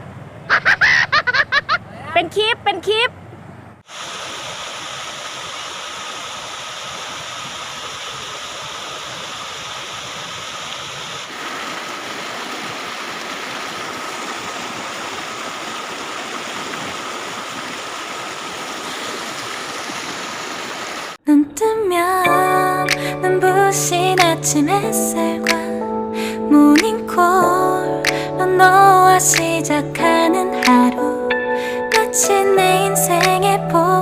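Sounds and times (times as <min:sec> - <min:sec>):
waterfall rushing over rocks: 0:03.9 - 0:21.2.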